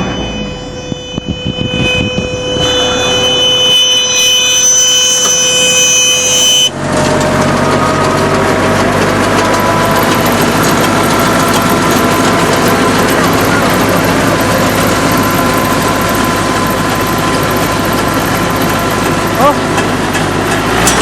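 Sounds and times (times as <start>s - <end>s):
baler machinery whine: 0.0s - 21.0s
dense machinery clattering: 6.8s - 21.0s.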